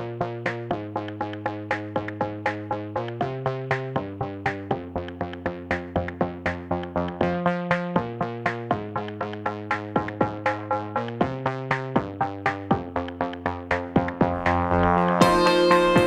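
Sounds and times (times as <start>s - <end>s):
light tune of quick pitched notes: 14.1s - 16.0s.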